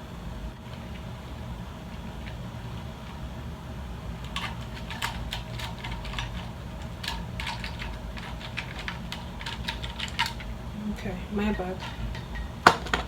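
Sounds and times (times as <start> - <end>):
steady low hum: 0.0 - 13.0
plastic parts clicking and tapping: 4.2 - 10.6, 11.5 - 13.0.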